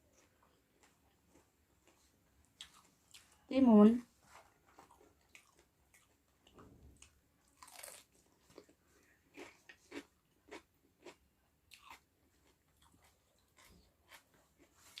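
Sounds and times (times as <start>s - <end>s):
person chewing crunchy food: 0.1s - 3.4s, 4.3s - 15.0s.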